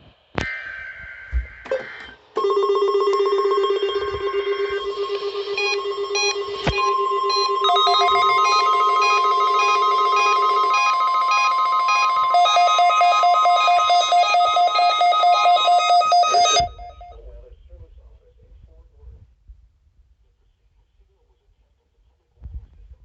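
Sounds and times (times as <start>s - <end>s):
rapidly pulsing electronic beeps: 0.5s - 17.2s
steady single-pitched alarm tone: 0.5s - 17.2s.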